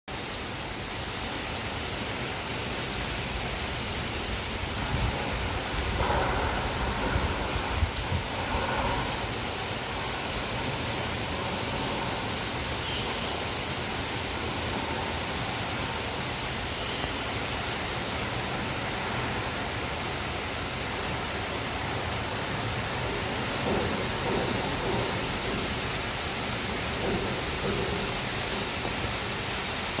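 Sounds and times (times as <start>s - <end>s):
heavy rain: 0.1s - 30.0s.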